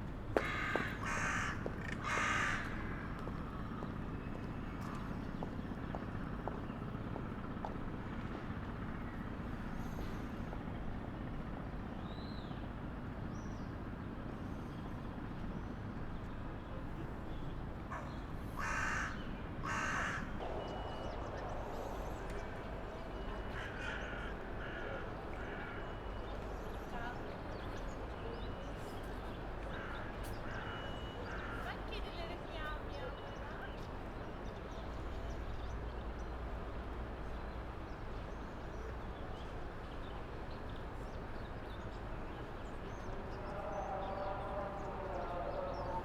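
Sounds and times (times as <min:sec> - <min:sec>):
low street hum: 0:00.0 - 0:46.0
crow cawing: 0:00.4 - 0:03.1, 0:17.9 - 0:21.0, 0:23.2 - 0:26.1, 0:29.7 - 0:31.8.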